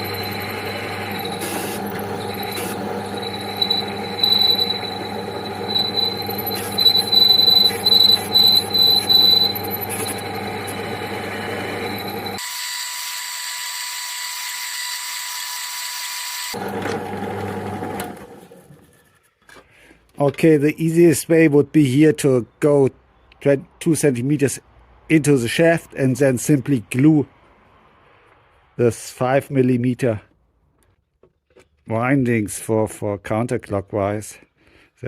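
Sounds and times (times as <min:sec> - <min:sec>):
small electric motor squealing: 0:00.0 - 0:16.6.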